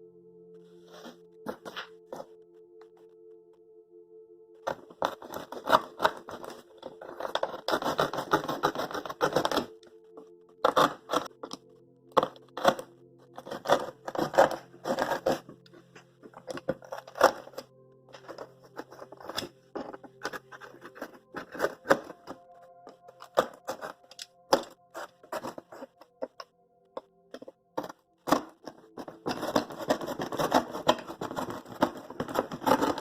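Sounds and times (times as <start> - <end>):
cardboard cutting strokes: 4.7 - 9.8, 10.6 - 11.6, 12.2 - 15.6, 16.2 - 17.6, 18.2 - 26.4, 27.4 - 33.0.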